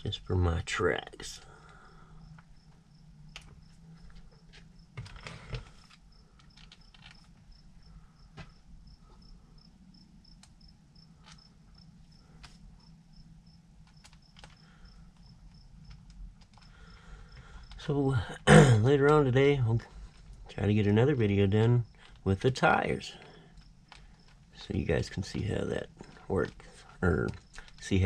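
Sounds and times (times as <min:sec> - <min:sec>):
cricket chirping: 0:00.0 - 0:28.0
handling clicks and knocks: 0:03.4 - 0:07.5, 0:13.8 - 0:18.0, 0:18.8 - 0:28.0.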